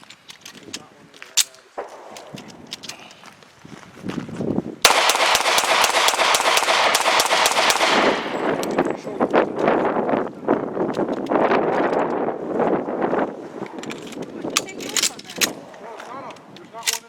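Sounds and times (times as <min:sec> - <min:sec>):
automatic gunfire: 0:04.8 - 0:08.6.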